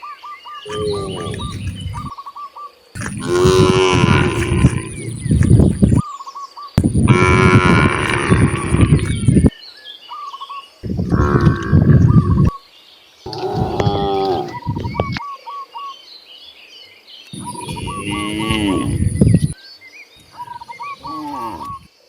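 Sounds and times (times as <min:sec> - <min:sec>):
cattle mooing: 0:00.7 - 0:02.1, 0:03.0 - 0:06.0, 0:06.8 - 0:09.5, 0:10.9 - 0:12.4, 0:13.3 - 0:15.2, 0:17.4 - 0:19.6, 0:21.0 - 0:21.8.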